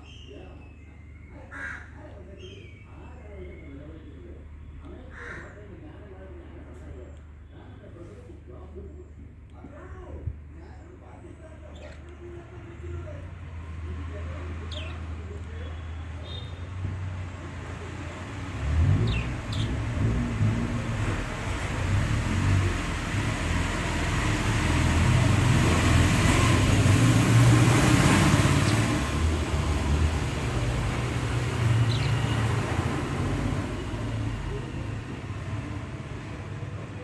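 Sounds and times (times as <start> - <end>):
vehicle passing by rumble: 12.5 - 37.0
high bird chirps: 18.9 - 19.9, 27.7 - 32.8.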